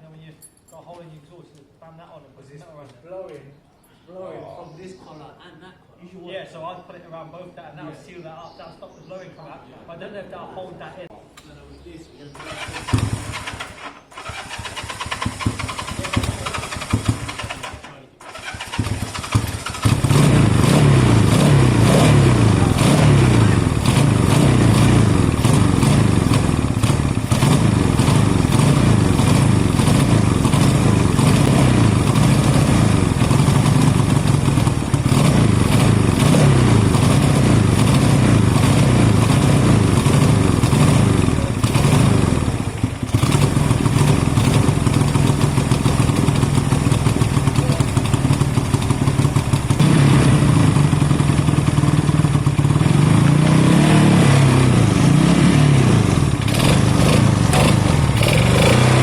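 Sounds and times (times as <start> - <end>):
motorcycle engine running: 12.4 - 59.0.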